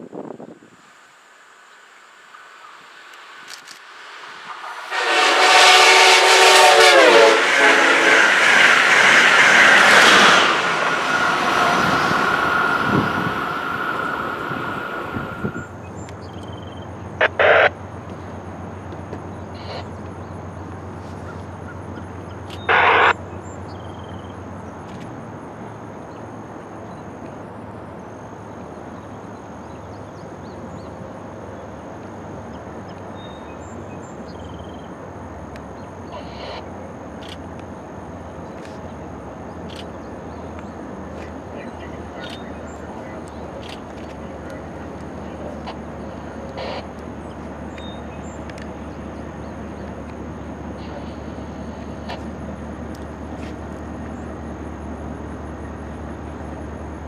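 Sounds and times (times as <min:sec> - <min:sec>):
train passing: 0:02.4 - 0:16.0, 0:20.4 - 0:26.8, 0:27.4 - 0:57.0
locomotive horn blowing: 0:04.6 - 0:15.7, 0:22.7 - 0:23.1
short loud bursts: 0:04.6 - 0:15.7.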